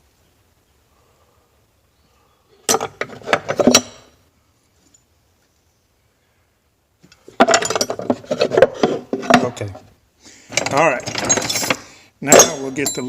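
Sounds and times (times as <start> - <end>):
metal hand tools clattering: 7.4 - 9.6, 10.5 - 13.0.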